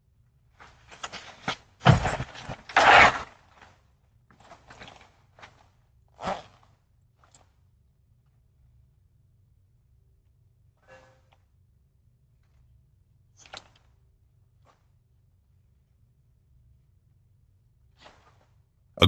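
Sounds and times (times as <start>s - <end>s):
knocks and thuds: 1.8s - 2.7s
faint low hum: 3.4s - 19.0s.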